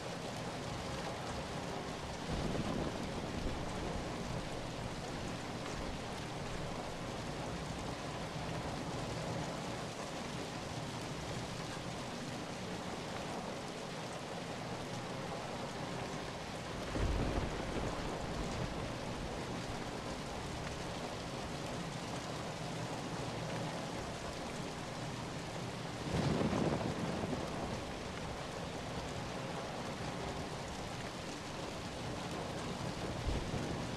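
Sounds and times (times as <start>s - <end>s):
rain falling: 0.0s - 33.9s
low rumble of thunder: 2.0s - 9.6s, 16.6s - 33.9s.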